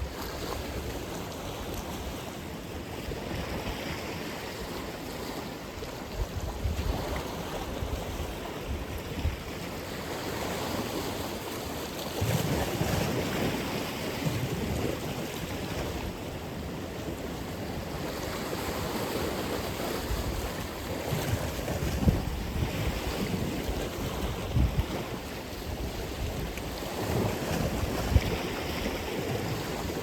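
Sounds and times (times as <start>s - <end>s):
ocean waves breaking ashore: 0.0s - 30.0s
wind noise on microphone: 0.0s - 30.0s.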